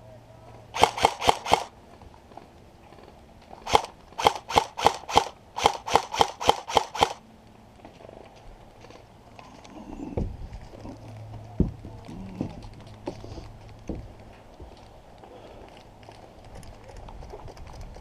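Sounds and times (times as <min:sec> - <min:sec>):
airsoft gun shots: 0:00.8 - 0:01.7, 0:03.6 - 0:07.2.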